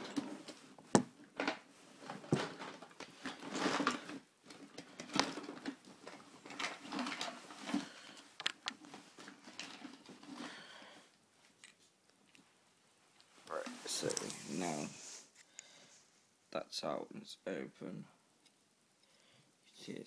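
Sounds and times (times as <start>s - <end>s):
scraping and handling noise: 0.0s - 12.5s, 13.2s - 15.5s.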